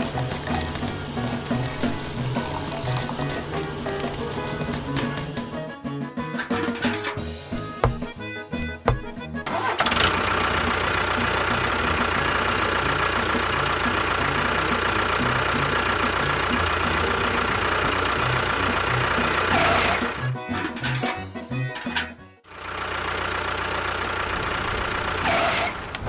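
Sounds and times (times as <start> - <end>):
motor running: 0.0 - 5.6, 7.8 - 20.3.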